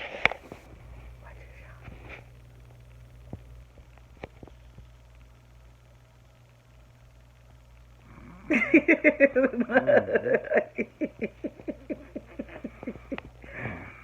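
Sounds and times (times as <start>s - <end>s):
person laughing: 8.5s - 14.0s.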